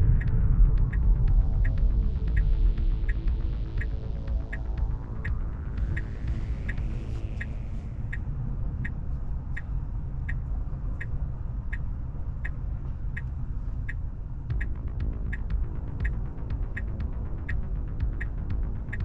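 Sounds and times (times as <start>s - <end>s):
low road noise rumble: 0.0s - 19.0s
turn signal ticking: 13.9s - 19.0s.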